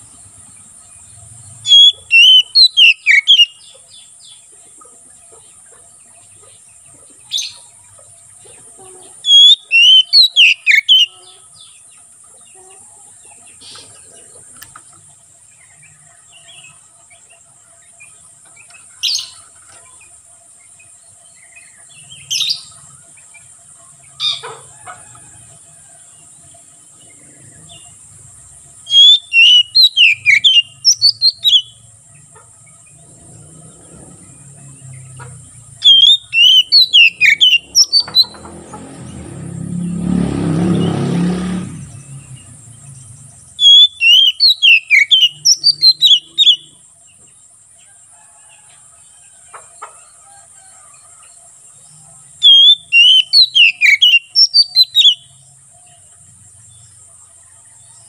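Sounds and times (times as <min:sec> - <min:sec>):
insects buzzing: 0:00.0 - 0:58.0
short bird calls: 0:01.6 - 0:04.0, 0:07.2 - 0:11.7, 0:28.8 - 0:31.8, 0:33.7 - 0:38.4, 0:41.7 - 0:46.8, 0:52.4 - 0:55.4
bird singing whistled phrases: 0:01.7 - 0:03.6, 0:09.2 - 0:11.1, 0:28.9 - 0:31.8, 0:35.8 - 0:38.4, 0:43.6 - 0:46.7, 0:52.4 - 0:55.3.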